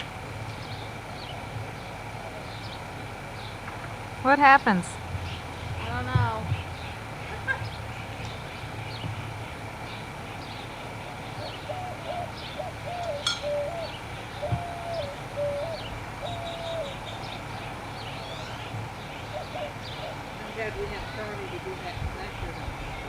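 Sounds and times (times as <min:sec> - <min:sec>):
birds cooing or whistling: 0:09.9 - 0:23.0.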